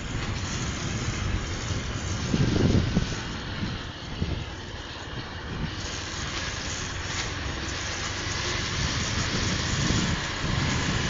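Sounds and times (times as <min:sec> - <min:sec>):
wind rushing on microphone: 0:00.0 - 0:11.0.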